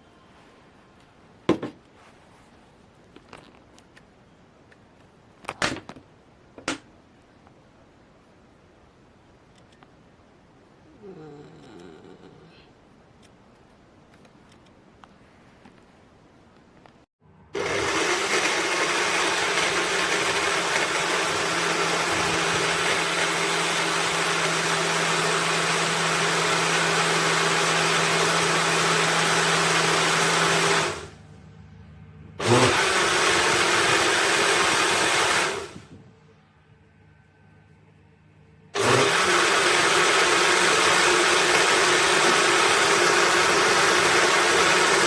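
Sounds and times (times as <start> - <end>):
blender motor whirring: 17.6 - 31.1, 32.4 - 35.9, 38.8 - 45.0.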